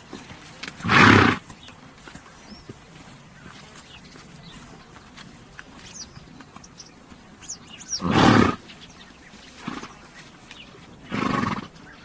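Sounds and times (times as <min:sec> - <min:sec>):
horse snorting: 0:00.0 - 0:01.7, 0:07.8 - 0:08.7, 0:09.6 - 0:10.2, 0:11.0 - 0:12.0
faint birds chirping: 0:00.0 - 0:12.0.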